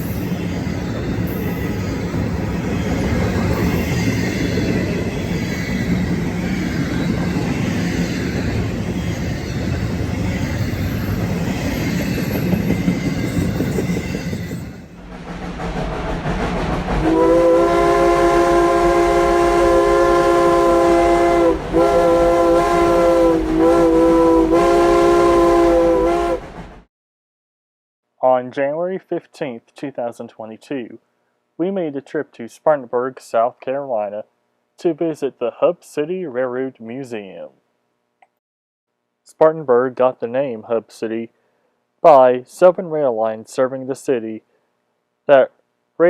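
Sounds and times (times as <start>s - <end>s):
train rumbling past: 0.0s - 26.9s
locomotive air horn: 17.0s - 26.6s.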